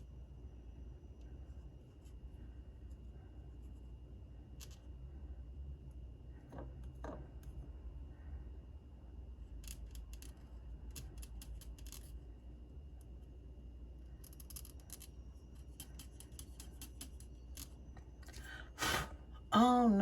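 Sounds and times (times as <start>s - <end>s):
faint low hum: 0.0s - 20.0s.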